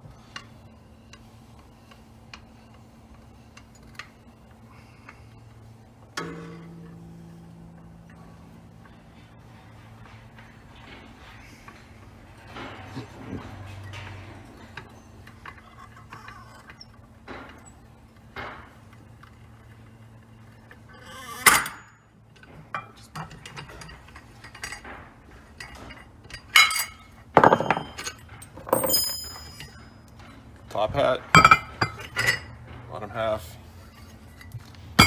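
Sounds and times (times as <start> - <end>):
metal parts clinking and clanking: 6.2 - 7.0, 20.7 - 35.0.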